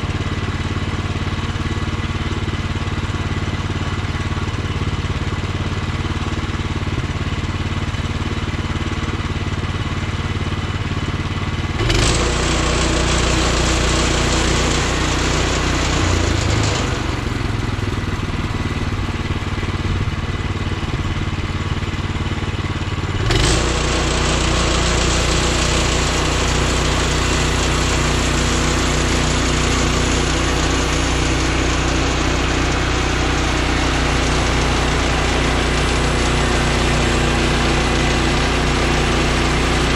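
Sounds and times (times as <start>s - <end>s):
sawmill gas engine running: 0.0s - 39.9s.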